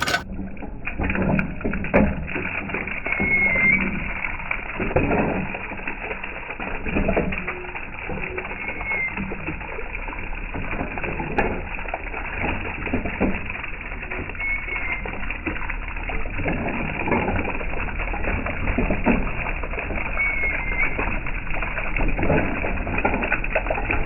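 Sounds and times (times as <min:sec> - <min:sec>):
running water splashing: 0:00.0 - 0:00.2, 0:00.9 - 0:24.0
bird high call: 0:20.2 - 0:21.0.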